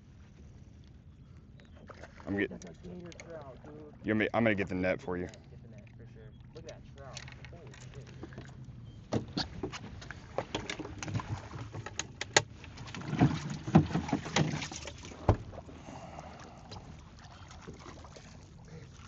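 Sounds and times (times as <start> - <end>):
water splashing: 1.8 - 8.6, 9.4 - 19.0
knocks and clatter on boat side: 6.6 - 15.7.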